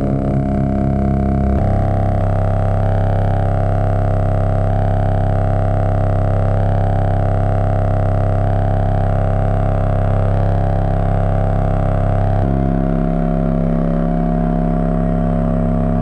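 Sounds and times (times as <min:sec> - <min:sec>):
synthesizer droning chord: 0:00.0 - 0:16.0.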